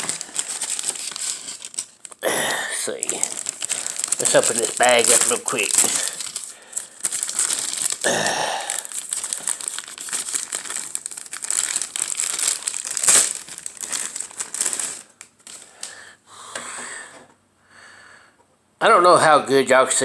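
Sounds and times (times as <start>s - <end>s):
plastic bag crinkling: 0.0s - 16.0s.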